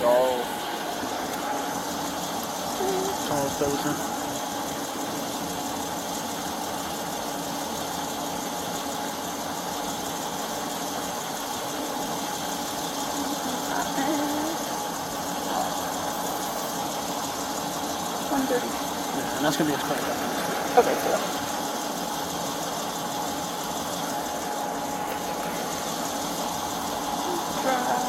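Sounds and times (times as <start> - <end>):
vehicle engine idling: 0.0 - 28.0
faint voices: 2.8 - 4.2.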